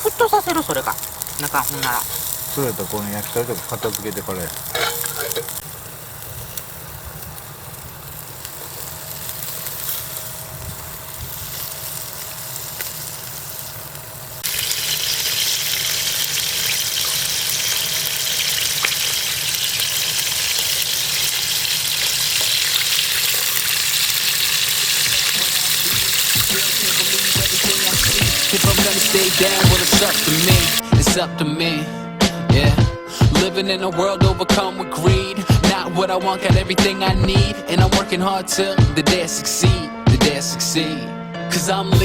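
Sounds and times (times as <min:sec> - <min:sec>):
food sizzling on a grill: 0:00.0 - 0:30.8.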